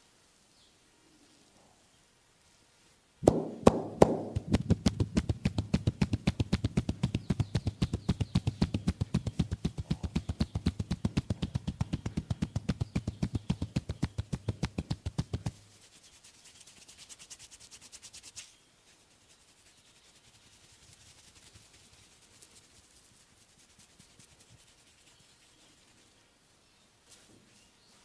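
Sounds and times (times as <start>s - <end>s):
hand slaps on bare back: 3.2s - 15.5s
hands rubbing over skin: 3.2s - 26.1s.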